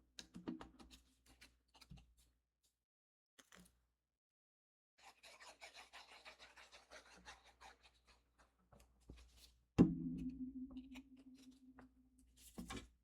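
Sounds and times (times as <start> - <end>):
paper rubbing and scratching: 5.2 - 8.2.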